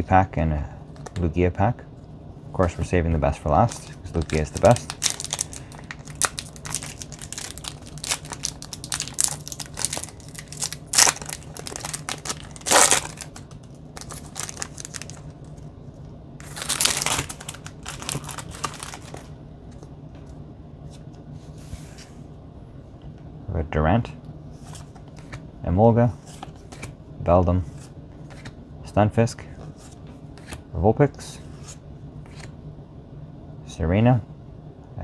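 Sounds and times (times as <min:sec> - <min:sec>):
cards being handled: 0:02.6 - 0:15.6, 0:16.4 - 0:21.1, 0:26.2 - 0:27.0, 0:27.6 - 0:28.6, 0:29.6 - 0:30.6, 0:31.4 - 0:32.5
foil wrapper crinkling and tearing: 0:03.7 - 0:15.3, 0:16.4 - 0:19.3.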